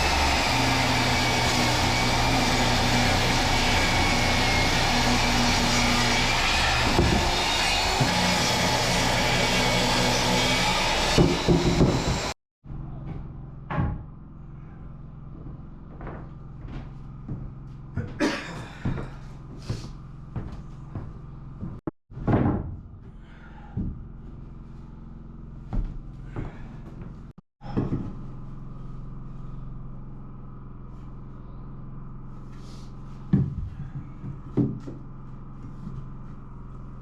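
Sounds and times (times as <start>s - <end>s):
loud machine noise: 0.0s - 12.4s
knocks and thumps: 11.1s - 12.4s, 18.8s - 23.2s.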